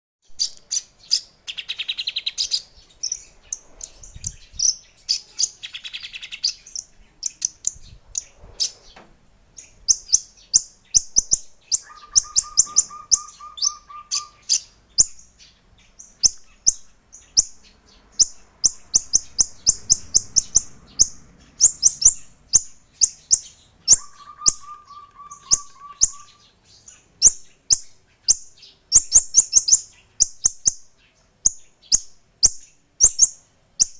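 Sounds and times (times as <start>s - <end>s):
songbird chirping: 0.2s - 33.9s
low pulsed bird trill: 9.6s - 33.9s.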